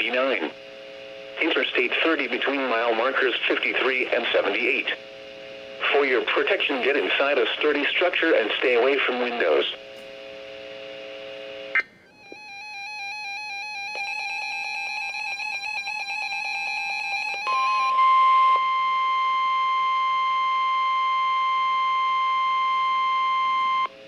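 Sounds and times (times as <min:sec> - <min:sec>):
loud steady alarm tone: 0:12.1 - 0:23.9.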